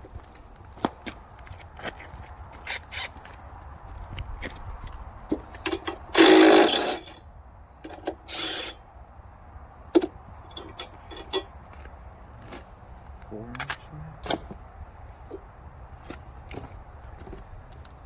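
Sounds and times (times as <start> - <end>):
power drill running: 6.2 - 7.1, 8.3 - 8.8
handling clicks and knocks: 13.5 - 14.7.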